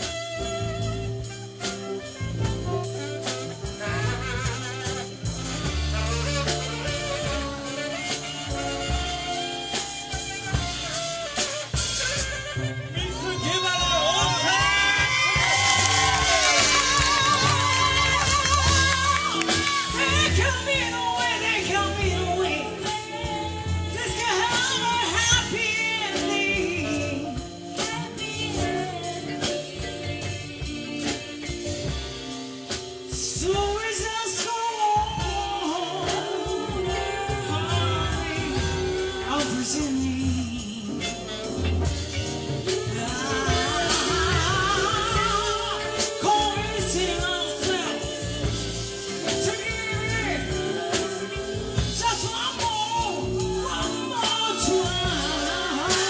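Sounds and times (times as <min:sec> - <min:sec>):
soul band playing: 0:00.0 - 0:56.0
steady drum beat: 0:00.0 - 0:56.0
lead vocal singing: 0:12.1 - 0:32.5, 0:33.1 - 0:56.0.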